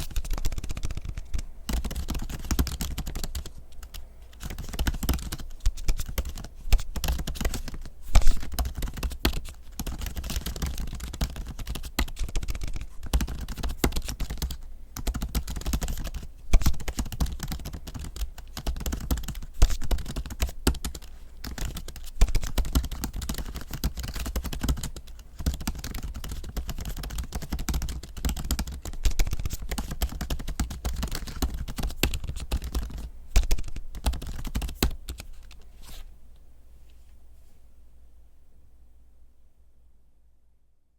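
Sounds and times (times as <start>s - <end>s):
fast keyboard typing: 0.0s - 35.6s.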